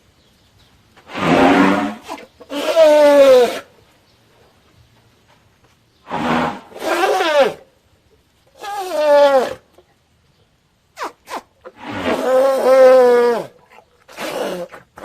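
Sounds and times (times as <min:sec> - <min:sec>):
baby elephant calling: 0:01.1 - 0:03.7, 0:06.1 - 0:07.6, 0:08.6 - 0:09.6.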